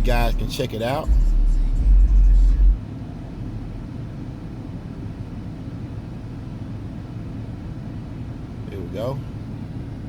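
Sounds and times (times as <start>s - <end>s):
deep sub-bass from subwoofer: 0.0s - 2.8s
steady low rumble: 0.0s - 8.6s.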